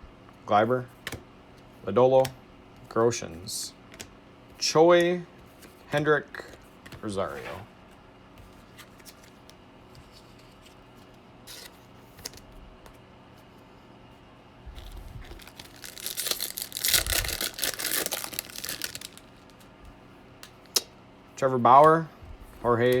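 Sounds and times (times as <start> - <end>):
foil wrapper tearing and crinkling: 14.8 - 19.6.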